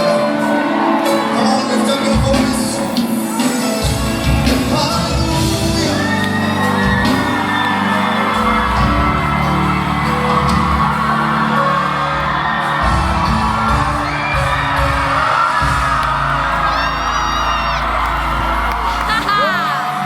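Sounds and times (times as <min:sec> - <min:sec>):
crowd whooping: 0:00.0 - 0:20.0
live gospel band playing: 0:00.0 - 0:20.0.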